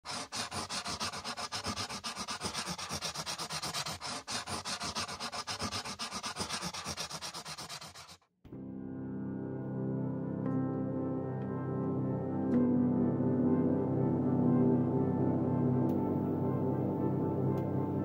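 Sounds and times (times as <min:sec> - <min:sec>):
fast rubbing strokes: 0:00.0 - 0:08.3.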